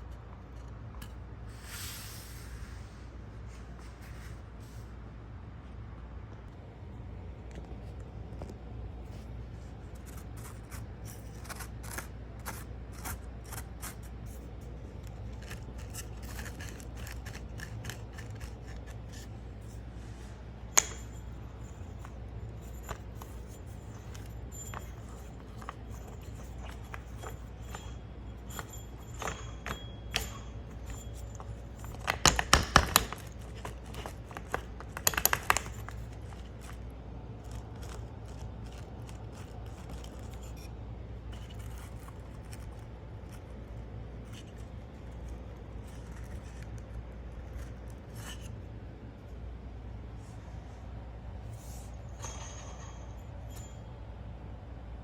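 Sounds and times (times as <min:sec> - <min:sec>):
steady low hum: 0:00.0 - 0:55.0
light clicks and scrapes: 0:07.4 - 0:49.4.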